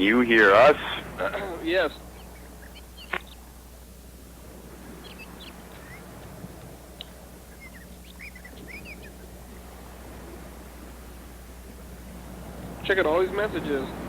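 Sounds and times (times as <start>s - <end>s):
low electrical hum: 0.0s - 14.0s
bird chirps: 1.4s - 3.9s, 4.7s - 10.4s.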